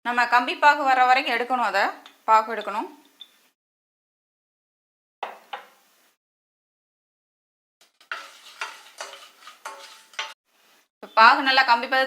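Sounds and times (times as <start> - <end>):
spoon scraping and clinking on pan: 7.8 - 10.4.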